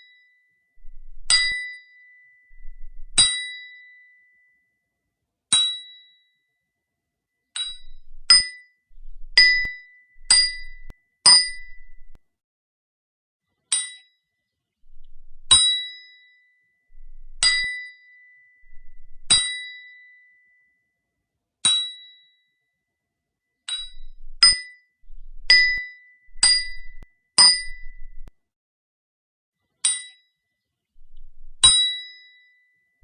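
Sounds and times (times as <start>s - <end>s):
hammer striking steel chisel: 7.6s - 8.6s, 9.3s - 12.2s, 17.4s - 17.8s, 23.7s - 24.7s, 25.4s - 28.3s.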